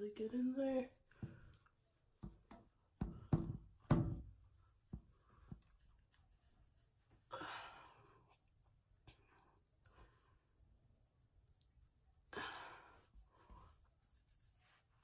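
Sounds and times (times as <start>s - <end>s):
hands rubbing scrub on wet skin: 0.9s - 2.9s, 4.2s - 7.3s, 8.2s - 15.0s.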